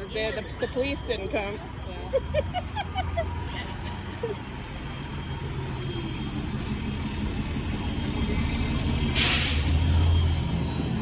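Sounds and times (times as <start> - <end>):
fire truck engine rumbling: 0.4 - 11.0
loud hiss: 9.2 - 9.8.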